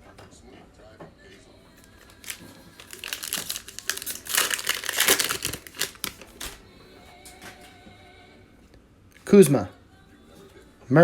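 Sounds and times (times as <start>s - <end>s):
plastic wrapper tearing and crinkling: 1.8s - 6.6s.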